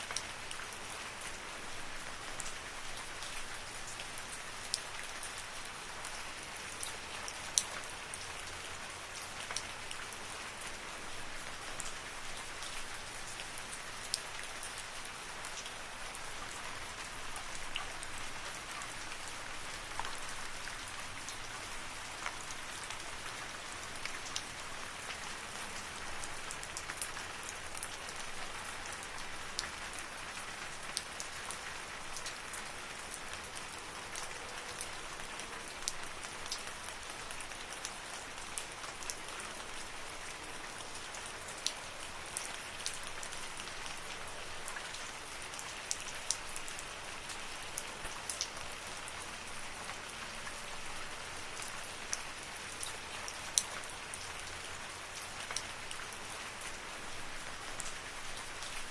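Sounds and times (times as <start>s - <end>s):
steady rain hiss: 0.0s - 58.9s.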